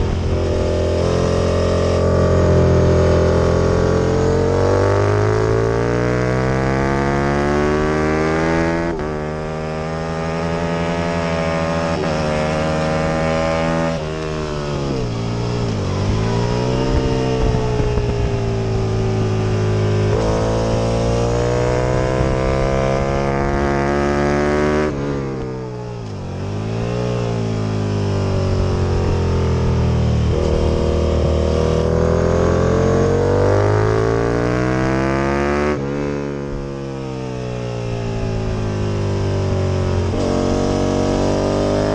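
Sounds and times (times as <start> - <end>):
motorcycle engine accelerating hard: 0.0 - 41.9.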